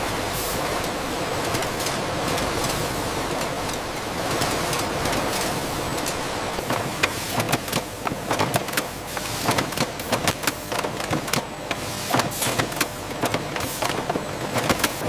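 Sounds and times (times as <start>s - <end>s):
machinery clicking and clacking: 0.8s - 15.0s.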